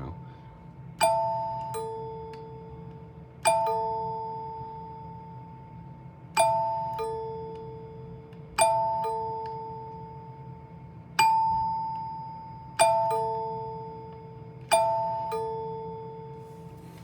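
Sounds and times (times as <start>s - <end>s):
door chime ringing: 11.2s - 16.6s.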